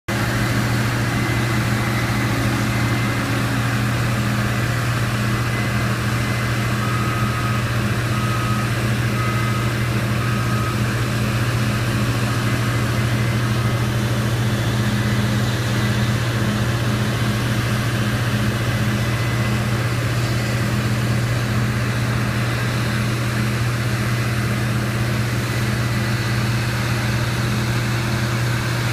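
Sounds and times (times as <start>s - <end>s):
combine harvester engine drone: 0.1s - 28.9s
short high beeps: 0.5s - 13.9s.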